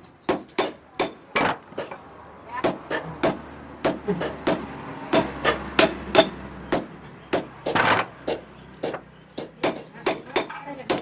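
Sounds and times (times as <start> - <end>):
hammer striking metal on anvil: 2.6 - 11.0.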